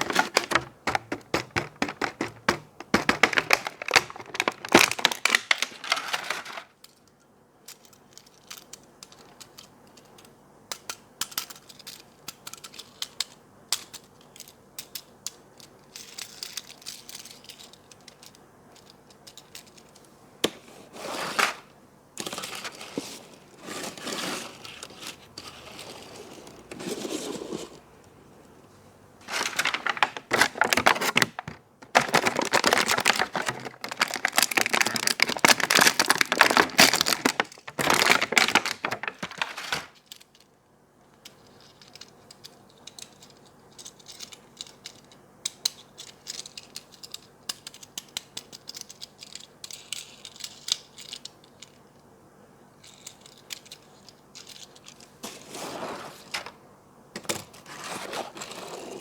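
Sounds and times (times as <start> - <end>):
packaging crinkling: 0.0 - 6.7, 29.2 - 40.0.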